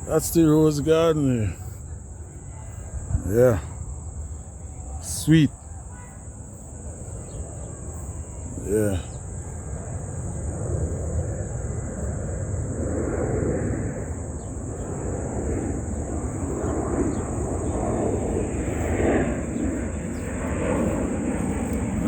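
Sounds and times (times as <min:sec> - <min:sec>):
airplane rumbling overhead: 0:00.0 - 0:22.0.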